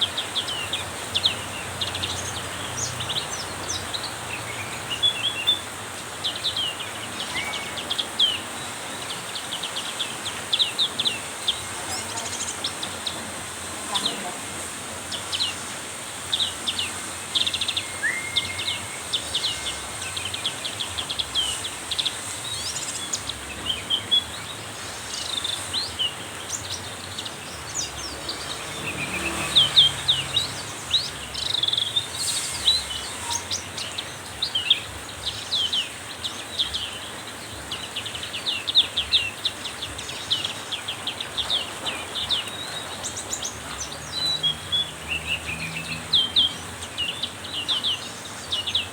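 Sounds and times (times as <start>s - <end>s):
heavy rain hiss: 0.0s - 48.9s
bird chirping and trilling: 15.1s - 48.9s.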